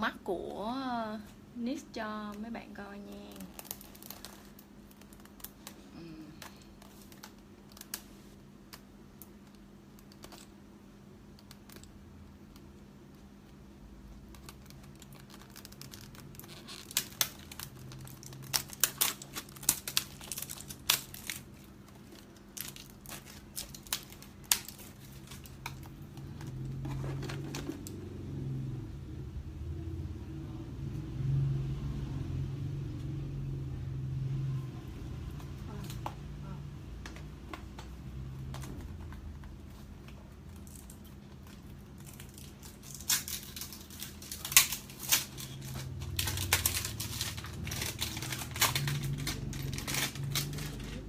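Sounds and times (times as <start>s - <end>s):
plastic packaging crinkling: 1.9s - 10.5s, 14.1s - 28.0s, 38.2s - 51.0s.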